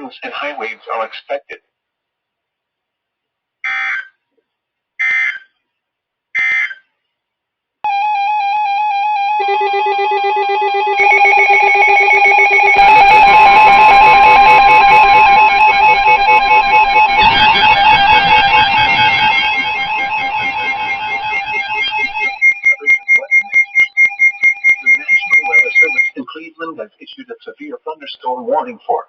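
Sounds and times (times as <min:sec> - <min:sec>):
music with held notes: 0:07.9 - 0:26.0
digital data tone bursts: 0:09.9 - 0:26.2.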